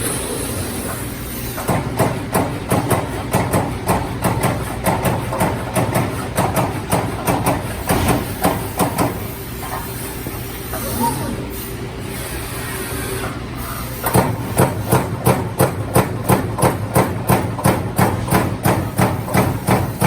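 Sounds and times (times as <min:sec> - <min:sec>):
punch press hitting sheet metal: 0:01.6 - 0:09.2.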